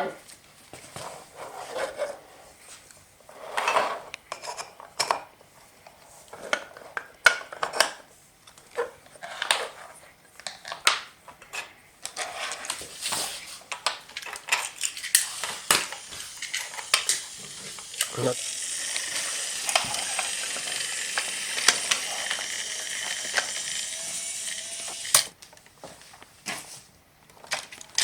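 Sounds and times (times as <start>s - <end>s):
wooden toy train pieces clattering: 11.6s - 25.3s.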